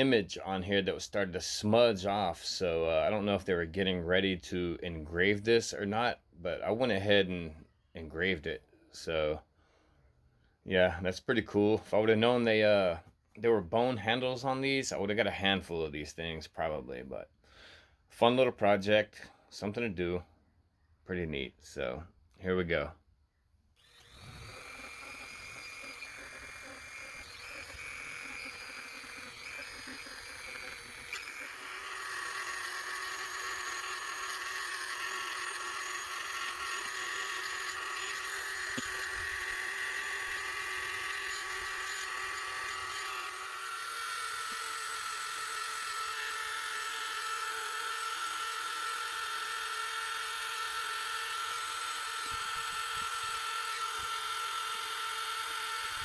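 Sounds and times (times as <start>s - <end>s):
engraving tool whining: 23.8s - 56.0s.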